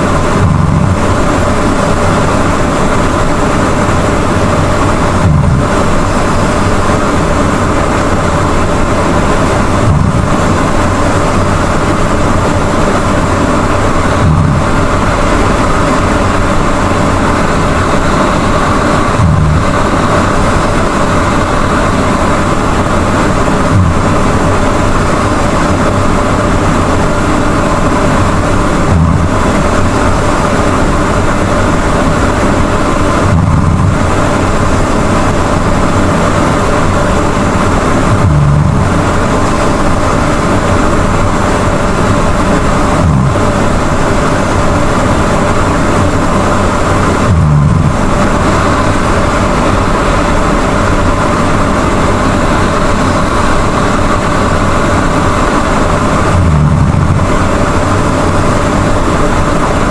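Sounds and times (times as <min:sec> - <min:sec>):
steady heavy noise: 0:00.0 - 0:59.9
person snoring loudly: 0:38.1 - 0:39.2, 0:42.9 - 0:43.8, 0:47.2 - 0:48.2, 0:56.3 - 0:57.3.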